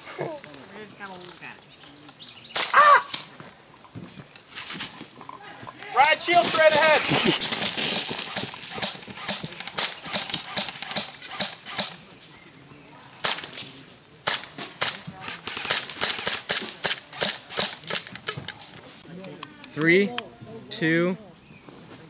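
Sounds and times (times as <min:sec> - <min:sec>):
airsoft guns firing: 0:02.6 - 0:03.3, 0:06.0 - 0:12.0, 0:13.2 - 0:13.6, 0:14.2 - 0:18.5.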